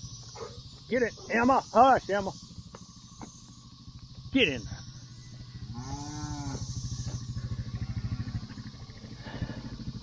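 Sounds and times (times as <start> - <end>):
small engine running: 0.0 - 10.0
cow mooing: 5.7 - 6.7.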